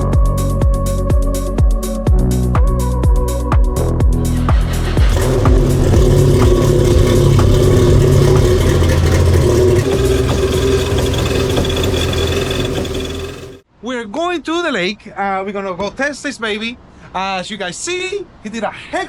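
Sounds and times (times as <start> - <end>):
engine running steadily: 4.3 - 13.6.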